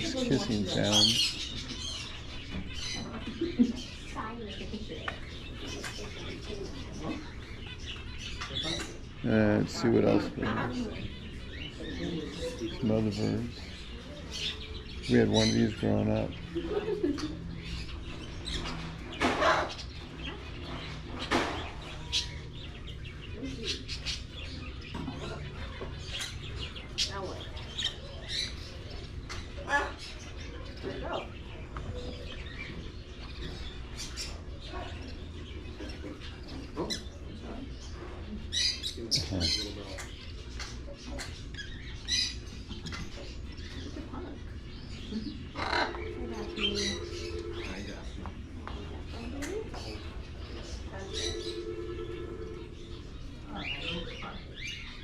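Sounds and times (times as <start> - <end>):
caged birds chirping: 0.0 - 55.0
harsh bird calls: 0.0 - 55.0
faint low hum: 16.2 - 55.0
steady low hum: 37.0 - 55.0.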